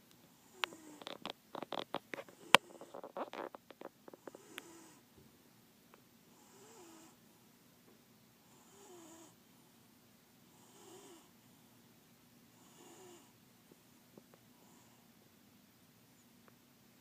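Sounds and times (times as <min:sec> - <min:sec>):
cat snoring: 0:00.4 - 0:01.2, 0:02.2 - 0:03.2, 0:04.2 - 0:05.0, 0:06.3 - 0:07.2, 0:08.4 - 0:09.4, 0:10.5 - 0:11.3, 0:12.5 - 0:13.4, 0:14.6 - 0:15.1.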